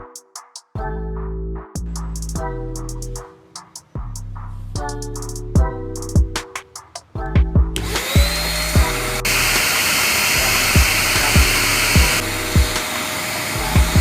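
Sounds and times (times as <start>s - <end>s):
background music with kick drum: 0.0s - 9.6s, 10.4s - 12.9s, 13.6s - 14.0s
hair dryer blowing: 7.8s - 14.0s.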